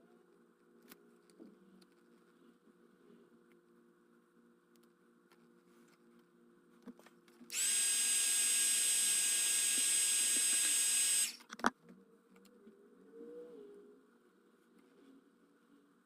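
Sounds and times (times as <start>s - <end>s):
electric tool high whine: 7.5s - 11.4s.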